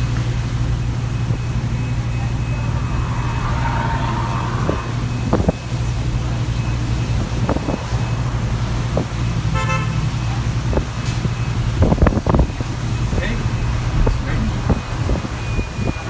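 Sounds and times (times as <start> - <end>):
bus engine drone: 0.0 - 16.0
vehicle horn toot: 9.5 - 10.0.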